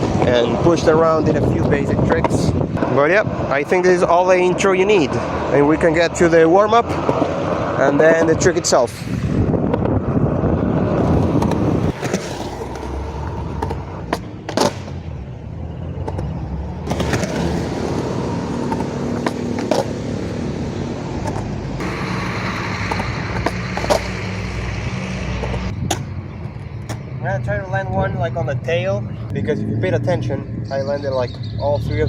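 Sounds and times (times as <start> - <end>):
skateboard wheels rolling: 9.6 - 27.1
skateboard tail popping: 11.0 - 15.1, 21.2 - 24.2
skateboard landing: 11.2 - 15.1.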